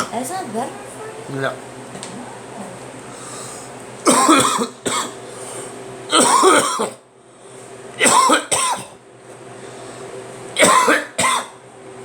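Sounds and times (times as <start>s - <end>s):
man coughing: 4.0s - 5.2s, 6.1s - 7.0s, 8.0s - 9.0s, 10.6s - 11.6s.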